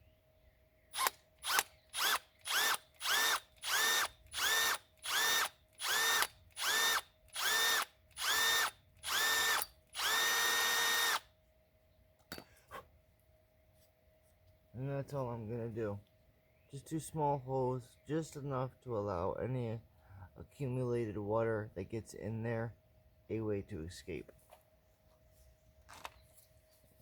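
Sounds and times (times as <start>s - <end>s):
electric drill bursts: 1.0s - 11.3s.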